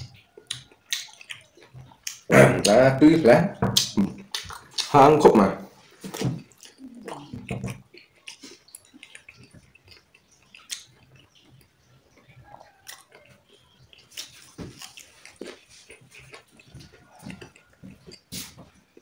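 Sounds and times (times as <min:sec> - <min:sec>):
person chewing food: 0:00.0 - 0:02.3, 0:03.8 - 0:05.0, 0:05.8 - 0:19.0
wet mouth clicks: 0:00.4 - 0:02.3, 0:06.5 - 0:11.4.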